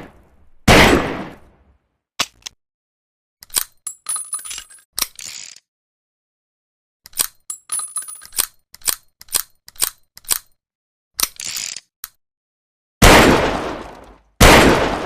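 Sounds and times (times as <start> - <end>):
gunshot: 0.0 - 1.4, 13.0 - 15.0.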